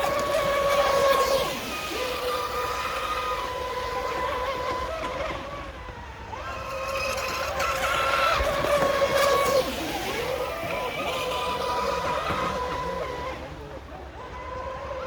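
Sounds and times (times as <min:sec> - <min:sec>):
rc boat motors whining: 0:00.0 - 0:15.0.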